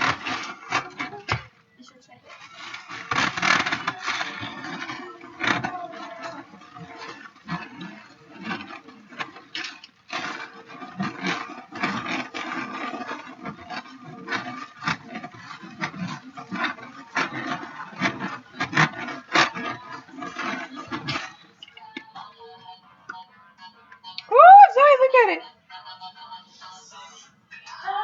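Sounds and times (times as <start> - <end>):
ice cream maker scraping and rattling: 0.0 - 25.2.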